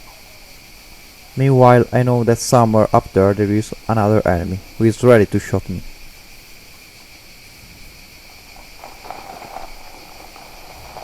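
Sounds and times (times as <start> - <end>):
insects chirring: 0.0 - 11.0
rustling through vegetation: 0.0 - 11.0.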